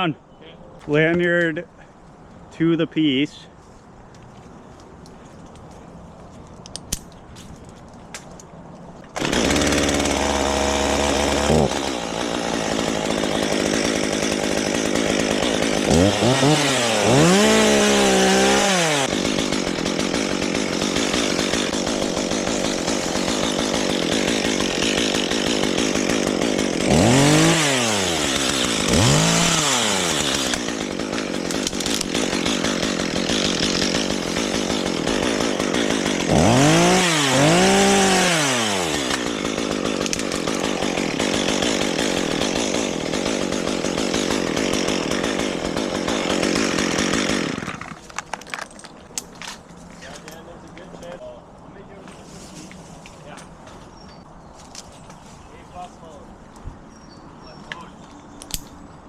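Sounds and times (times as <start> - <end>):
chainsaw cutting wood: 9.1 - 51.2.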